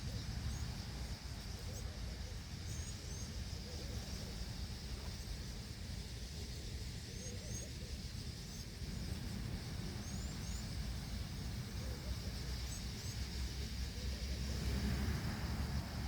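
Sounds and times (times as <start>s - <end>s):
wind rumble on microphone: 8.0s - 16.0s.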